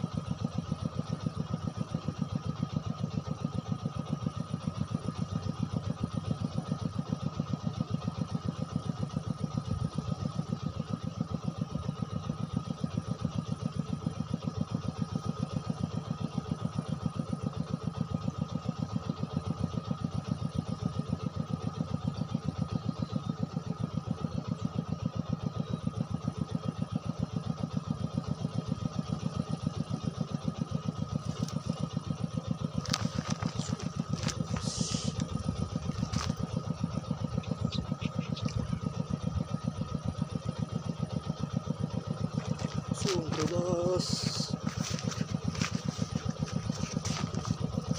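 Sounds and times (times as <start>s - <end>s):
small engine idling: 0.0s - 47.9s
thin steady whine: 29.1s - 47.9s.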